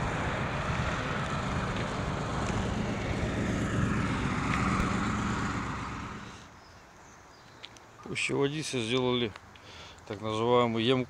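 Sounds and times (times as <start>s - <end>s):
vehicle passing on road: 0.0s - 6.5s.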